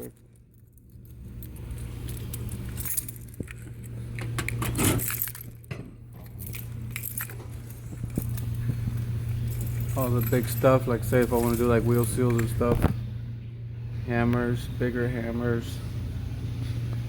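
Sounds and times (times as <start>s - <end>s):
tools clinking and rattling: 0.0s - 12.9s
steady low hum: 0.0s - 17.0s
metal drawer opening: 4.3s - 6.4s.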